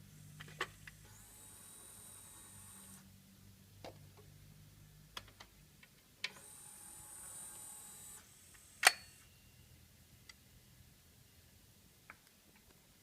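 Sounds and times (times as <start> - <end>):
motor whirring with high whine: 1.1 - 3.0, 6.4 - 8.8.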